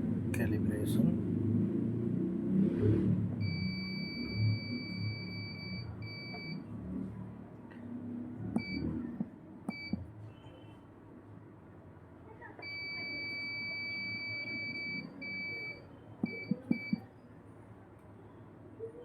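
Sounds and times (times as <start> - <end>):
high electronic beeps: 3.4 - 6.6, 8.6 - 8.9, 9.7 - 10.0, 12.6 - 17.0.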